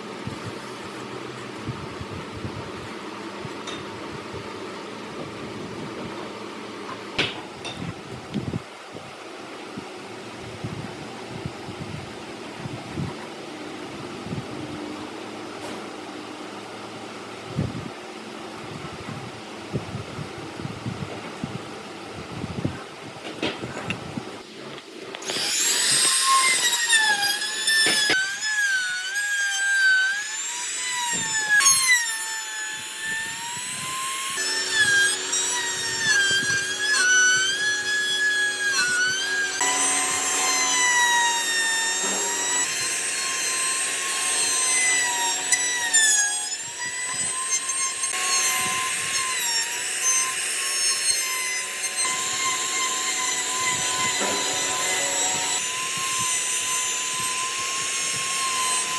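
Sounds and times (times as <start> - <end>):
power tool motor whine: 25.1 - 58.9.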